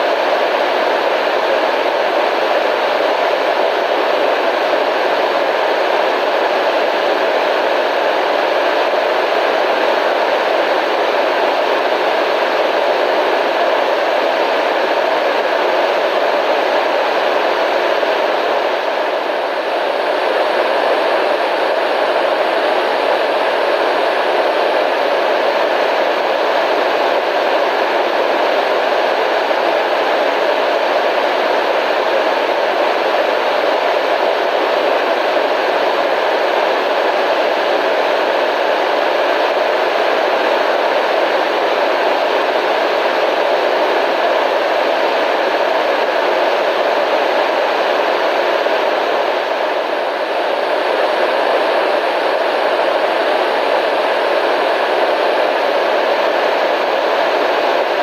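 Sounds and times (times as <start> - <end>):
radio static hiss: 0.0 - 58.0.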